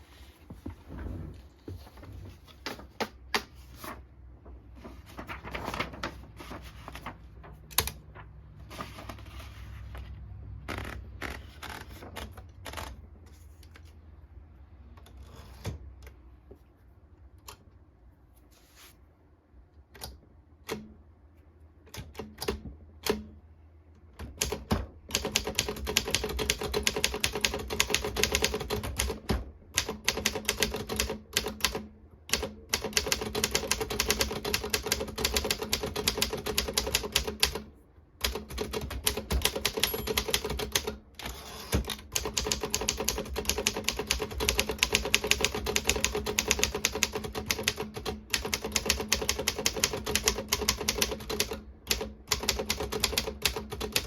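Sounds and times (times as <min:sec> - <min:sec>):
manual typewriter typing: 0:24.2 - 0:54.0.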